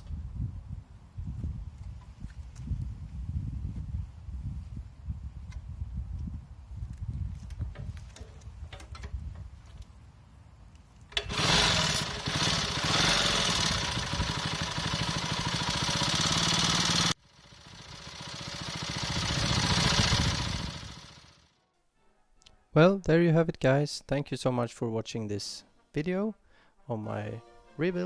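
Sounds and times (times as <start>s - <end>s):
moped engine running: 11.1s - 21.5s.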